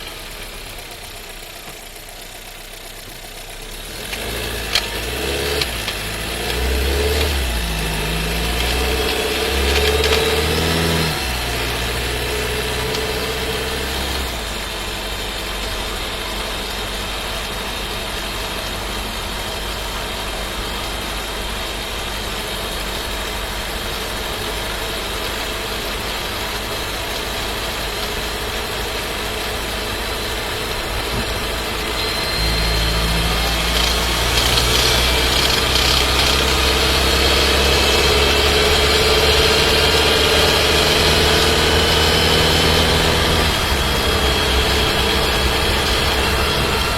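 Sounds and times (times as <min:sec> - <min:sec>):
car engine and drivetrain running: 0:00.0 - 0:46.9
gearbox gear shift: 0:04.1 - 0:13.7, 0:33.2 - 0:39.4
low droning rumble: 0:05.9 - 0:39.4.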